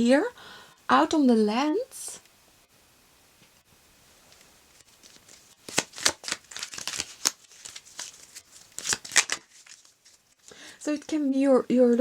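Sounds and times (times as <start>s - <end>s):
cards being shuffled: 4.3s - 10.4s.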